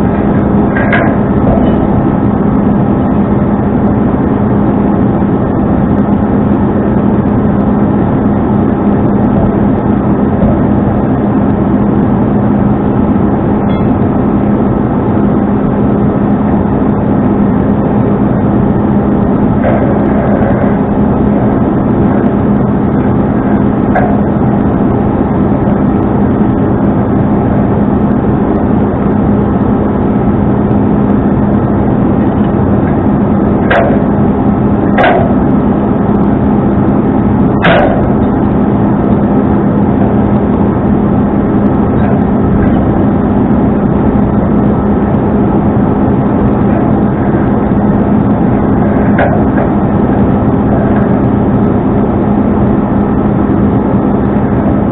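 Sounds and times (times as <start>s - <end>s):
truck engine running: 0.0s - 54.9s
sharp knocks: 35.0s - 35.5s.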